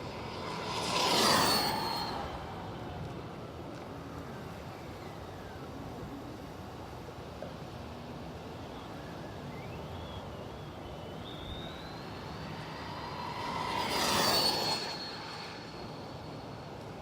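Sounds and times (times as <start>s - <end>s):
rc truck rushing past: 0.0s - 3.6s, 10.0s - 17.0s
rc truck electric motor whine: 0.1s - 2.7s, 11.3s - 16.9s.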